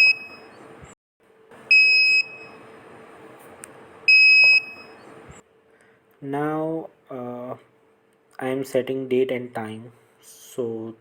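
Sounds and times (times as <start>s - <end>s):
alarm buzzer beeping: 0.0s - 0.6s, 1.7s - 2.6s, 4.1s - 5.0s
faint steady hum: 0.0s - 11.0s.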